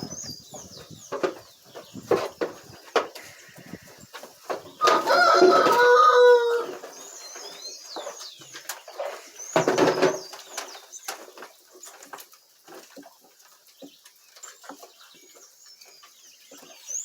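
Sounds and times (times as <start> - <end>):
small birds chirping: 0.0 - 17.0
rooster crowing: 4.8 - 6.8.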